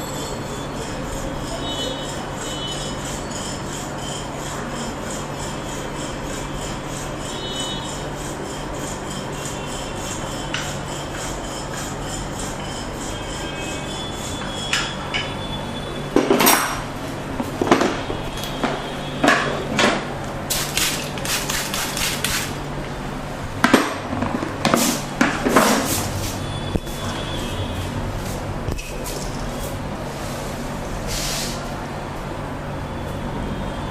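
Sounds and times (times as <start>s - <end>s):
sharp clacks and knocks: 23.6s - 25.9s.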